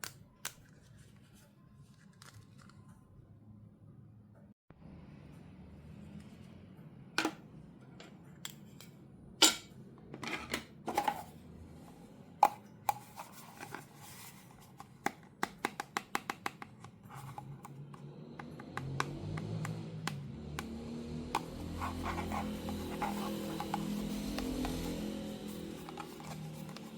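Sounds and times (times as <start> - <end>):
packaging rustling: 21.9 - 26.9.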